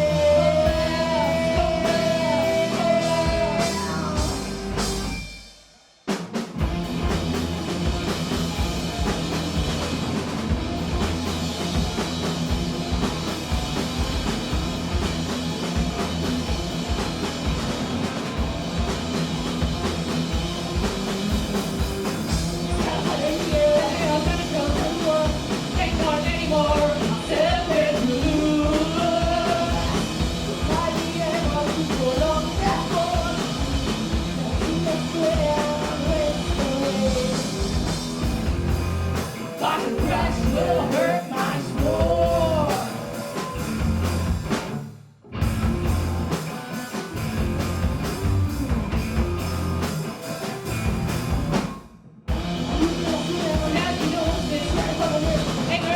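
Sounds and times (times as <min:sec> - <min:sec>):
woman singing: 0:00.0 - 0:04.5, 0:22.6 - 0:37.8, 0:39.6 - 0:43.1, 0:52.8 - 0:55.9
punk rock band playing: 0:00.0 - 0:55.9.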